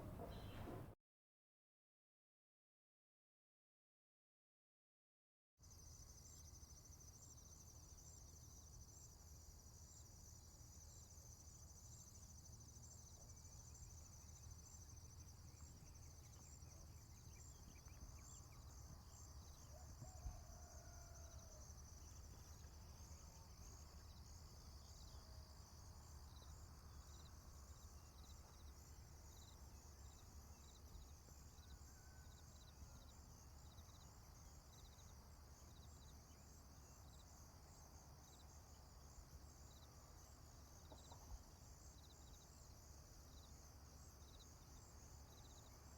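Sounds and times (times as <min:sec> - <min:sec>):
faint short calls: 0:00.0 - 0:01.0
low background hum: 0:00.0 - 0:01.0
insects chirping: 0:05.6 - 0:45.9.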